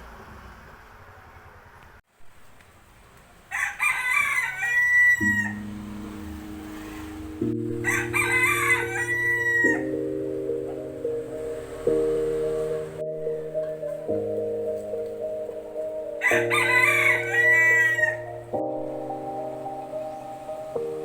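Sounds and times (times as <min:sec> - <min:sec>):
rooster crowing: 0:03.5 - 0:05.8, 0:07.8 - 0:10.0, 0:16.0 - 0:18.7
soft music with sustained chords: 0:05.2 - 0:21.0.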